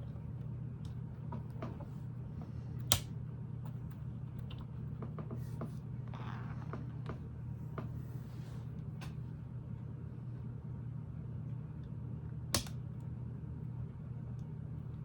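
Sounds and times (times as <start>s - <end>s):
steady low hum: 0.0s - 15.0s
sharp plastic snap: 12.6s - 12.8s.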